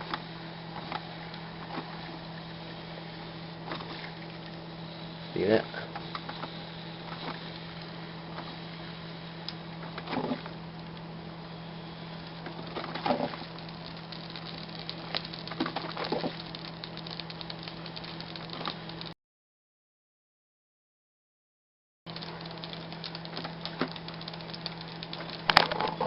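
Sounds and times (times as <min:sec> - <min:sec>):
coffee maker gurgles: 0:00.0 - 0:19.1, 0:22.1 - 0:26.0
coffee maker hum and hiss: 0:00.0 - 0:19.1, 0:22.1 - 0:26.0
crackling ticks: 0:12.4 - 0:19.1, 0:22.1 - 0:26.0.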